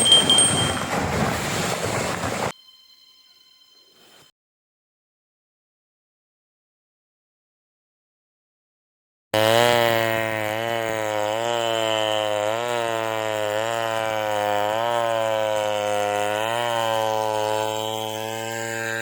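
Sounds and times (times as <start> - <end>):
chainsaw cutting wood: 0.0 - 2.0, 9.4 - 19.0.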